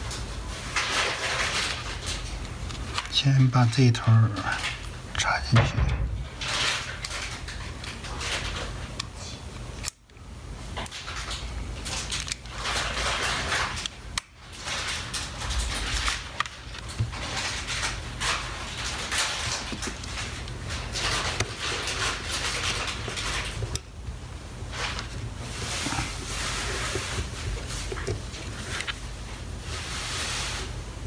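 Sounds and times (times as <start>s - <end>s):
plastic parts rustling and scraping: 0.1s - 9.0s, 10.8s - 24.1s, 24.7s - 30.7s
steady low hum: 2.0s - 6.9s.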